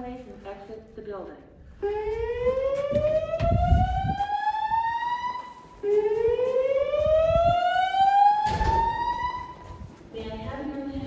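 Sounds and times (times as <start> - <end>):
fire alarm whoop tone: 1.8 - 9.9.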